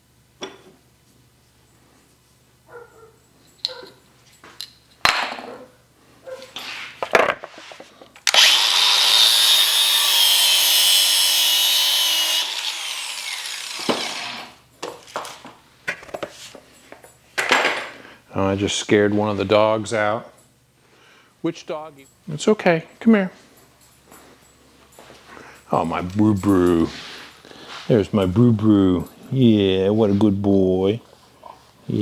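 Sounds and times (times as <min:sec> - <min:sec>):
power saw cutting hose: 0:08.3 - 0:14.6.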